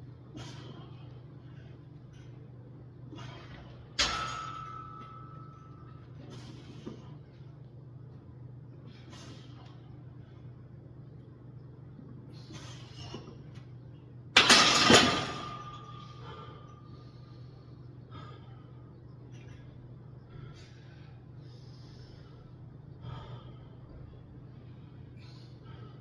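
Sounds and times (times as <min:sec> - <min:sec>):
barbell crashing onto steel rack: 0:14.4 - 0:15.8
man breathing hard: 0:16.1 - 0:18.9, 0:20.2 - 0:26.0.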